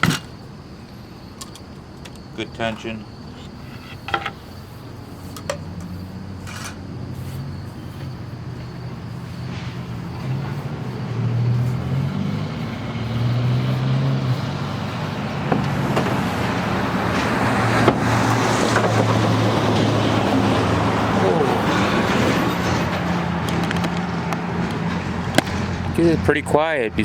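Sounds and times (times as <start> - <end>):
road noise: 0.0 - 27.0
truck engine drone: 4.4 - 27.0.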